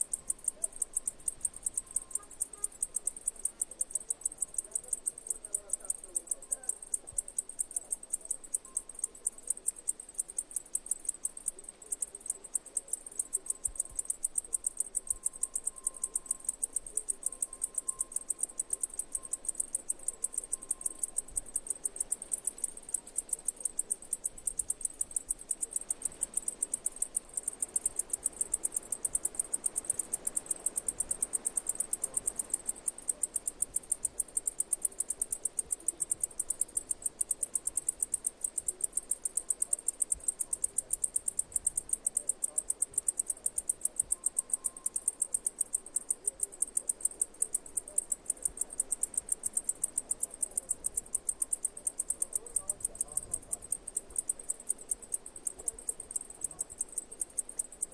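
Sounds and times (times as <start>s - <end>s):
insect chirping: 0.0s - 57.9s.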